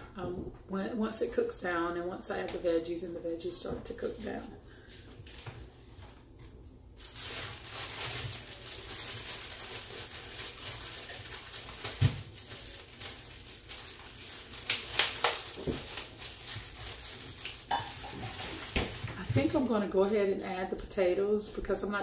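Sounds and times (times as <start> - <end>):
packaging crinkling: 7.0 - 19.2.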